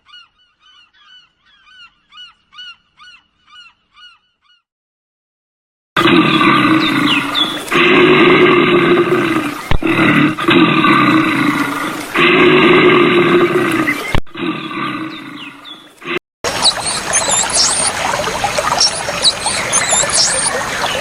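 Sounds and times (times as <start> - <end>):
large animal roaring: 6.0 - 16.2
faint bird chirps: 16.6 - 18.0, 18.7 - 21.0.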